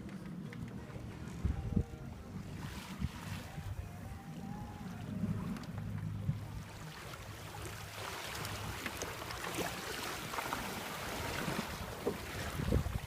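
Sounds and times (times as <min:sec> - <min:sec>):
low rumble: 0:00.0 - 0:07.9
sea water splashing along hull: 0:00.0 - 0:13.0.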